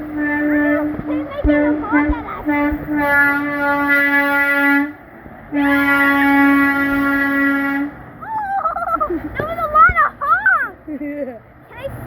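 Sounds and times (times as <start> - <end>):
truck air horn blasts: 0.0 - 8.1.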